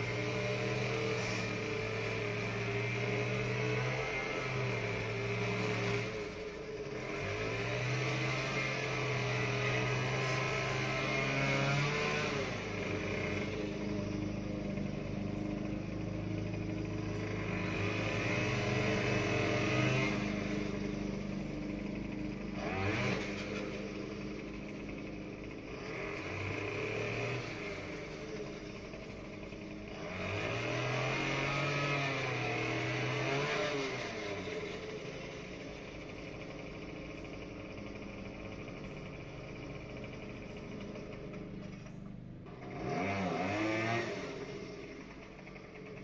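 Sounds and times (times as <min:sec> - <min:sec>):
small gasoline engine running: 0:00.0 - 0:46.0.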